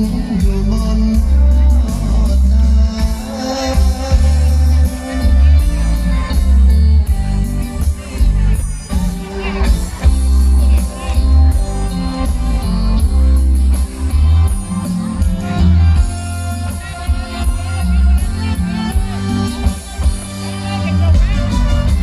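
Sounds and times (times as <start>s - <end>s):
band music with heavy bass: 0.0s - 22.0s.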